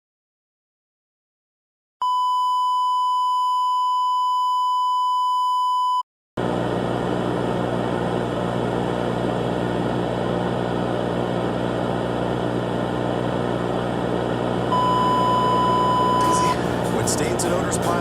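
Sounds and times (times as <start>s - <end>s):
loud buzzing with hum: 6.4s - 18.0s
high-pitched electronic tone: 14.7s - 18.0s.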